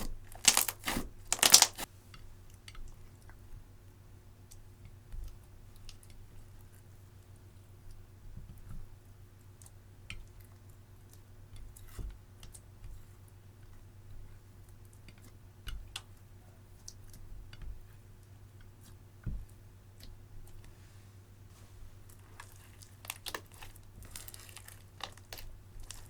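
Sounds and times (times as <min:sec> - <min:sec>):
slime clicking and popping: 0:00.3 - 0:01.9.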